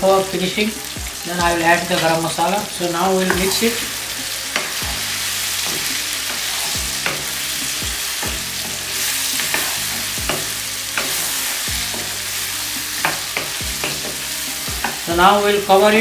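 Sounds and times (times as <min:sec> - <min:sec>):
food sizzling in hot oil: 0:00.0 - 0:16.0
utensil knocking and scraping pan: 0:03.2 - 0:03.8, 0:04.5 - 0:12.2.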